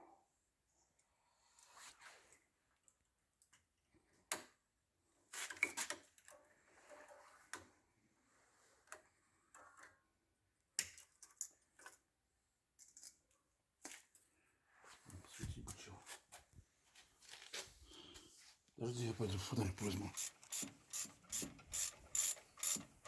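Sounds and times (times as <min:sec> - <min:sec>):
small metal parts clicking: 0:20.1 - 0:22.9.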